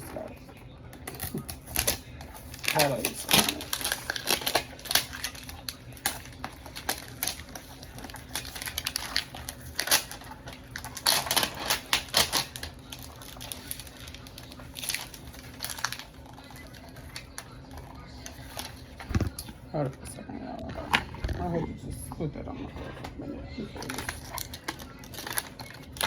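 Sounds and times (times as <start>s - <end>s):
packaging crinkling: 1.0s - 19.5s, 23.7s - 26.0s.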